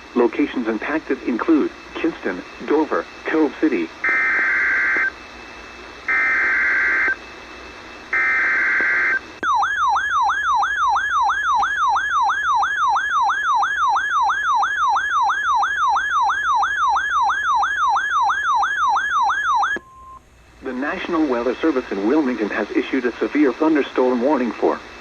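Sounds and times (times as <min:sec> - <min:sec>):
warbling siren-like alert tone: 0:04.0 - 0:05.1, 0:06.1 - 0:07.2, 0:08.1 - 0:19.8
data tone bursts: 0:06.1 - 0:07.2, 0:08.1 - 0:20.2.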